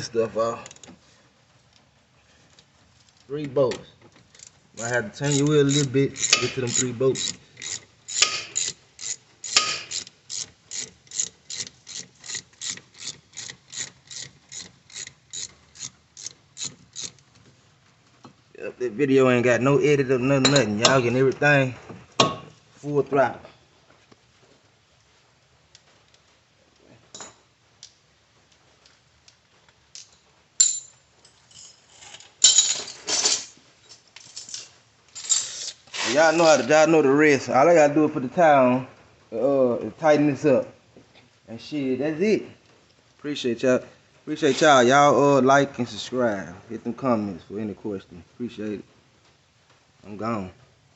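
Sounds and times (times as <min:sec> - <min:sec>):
metal tools clinking and scraping: 0:04.2 - 0:17.2, 0:20.4 - 0:21.5, 0:30.6 - 0:36.8
ratchet wrench clicking: 0:05.2 - 0:17.2.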